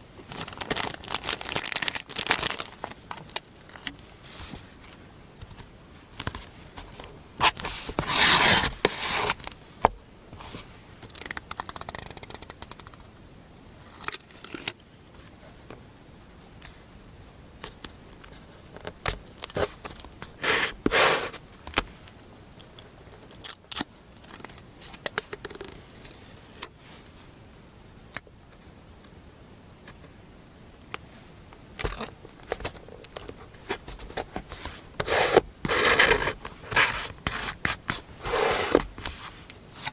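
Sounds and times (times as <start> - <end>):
paper sliding and crinkling: 0.2 - 3.4, 6.2 - 9.5, 33.6 - 39.9.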